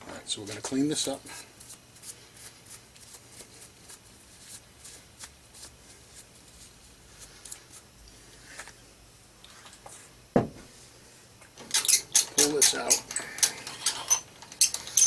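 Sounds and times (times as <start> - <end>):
hands rustling and scraping metal: 11.7 - 15.0.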